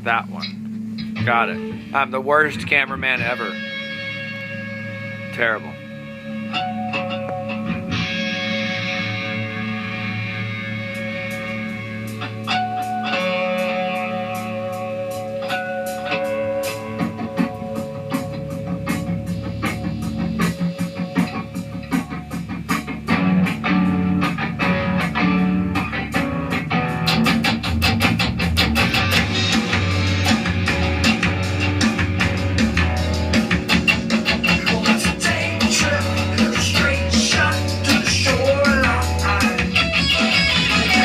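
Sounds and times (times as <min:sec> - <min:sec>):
bass guitar: 0:00.0 - 0:41.0
drums: 0:00.0 - 0:41.0
electric guitar rock music: 0:00.0 - 0:41.0.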